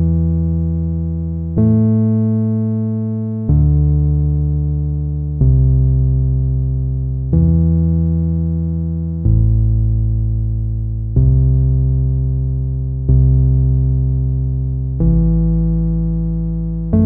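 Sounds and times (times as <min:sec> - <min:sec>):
slow electronic keyboard chords: 0:00.0 - 0:17.0.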